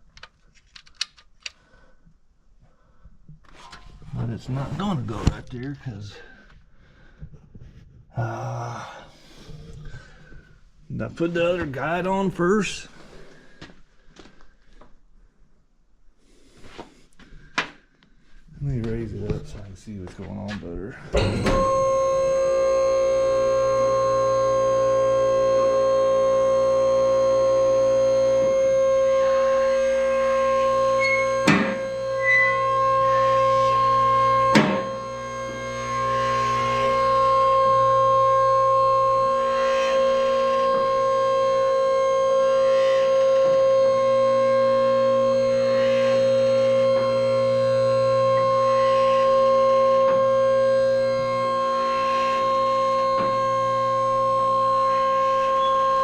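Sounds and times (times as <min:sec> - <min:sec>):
safety locks clicking: 0:00.1 - 0:01.6
hydraulic pump motor whine: 0:21.0 - 0:56.0.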